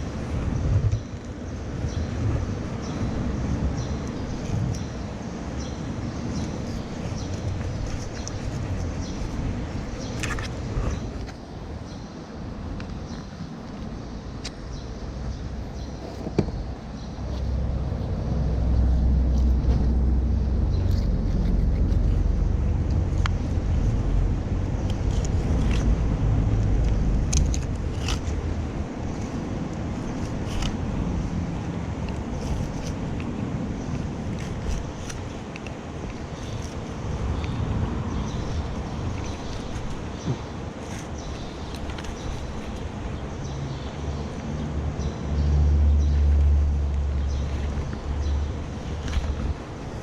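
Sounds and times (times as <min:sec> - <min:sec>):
wind buffeting microphone: 0:00.0 - 0:45.4
low engine rumble: 0:00.0 - 0:50.0
knife scraping and clicking: 0:06.3 - 0:11.4, 0:27.2 - 0:31.1, 0:32.0 - 0:37.6.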